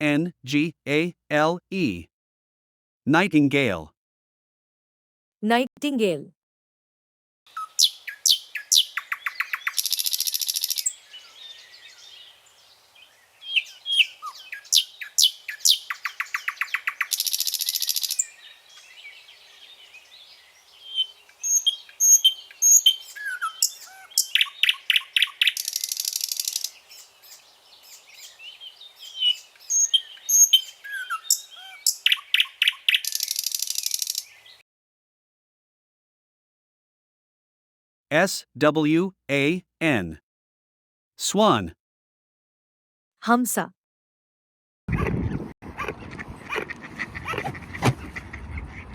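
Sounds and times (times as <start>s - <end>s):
nightingale singing: 7.5s - 34.6s.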